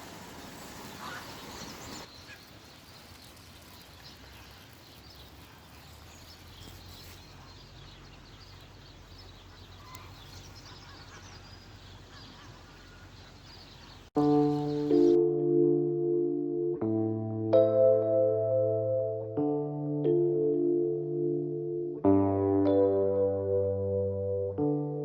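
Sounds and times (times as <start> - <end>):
outdoor hiss: 0.0 - 7.5
waterfowl honking: 0.8 - 2.5, 9.3 - 15.2.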